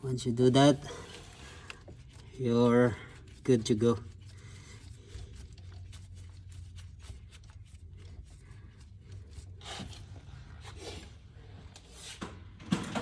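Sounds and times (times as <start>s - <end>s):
rubbing and scraping of parts: 0.0s - 13.0s.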